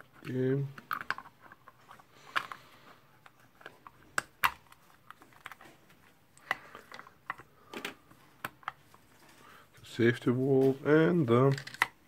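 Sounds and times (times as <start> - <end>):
small metal parts clicking: 11.4 - 11.9.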